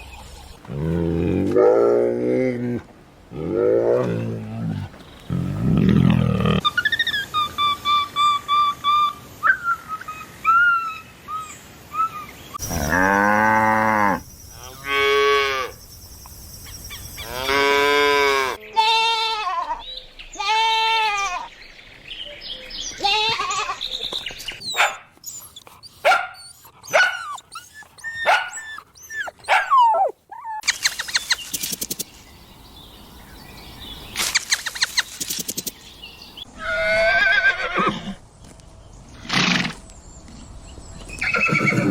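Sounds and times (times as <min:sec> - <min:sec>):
livestock bleating: 0:17.3 - 0:19.8, 0:20.4 - 0:21.4
short clicks and chirps: 0:30.6 - 0:32.1, 0:34.2 - 0:35.8.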